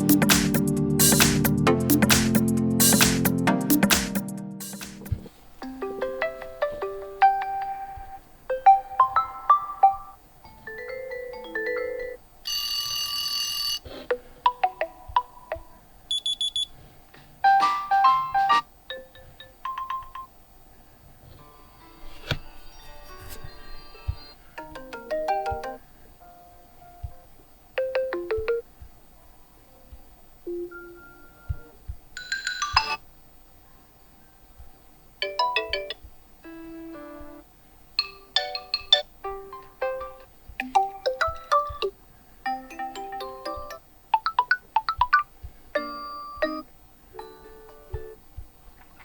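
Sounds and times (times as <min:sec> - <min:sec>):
soft electronic melody: 0:00.0 - 0:12.2, 0:14.1 - 0:15.8, 0:17.4 - 0:20.4, 0:21.5 - 0:27.2, 0:27.8 - 0:28.7, 0:30.5 - 0:31.9, 0:38.0 - 0:48.2
marimba-like ringtone melody: 0:05.7 - 0:16.2, 0:17.5 - 0:20.3, 0:23.2 - 0:25.8, 0:27.8 - 0:28.6, 0:35.2 - 0:36.0, 0:38.0 - 0:41.9, 0:42.5 - 0:47.8.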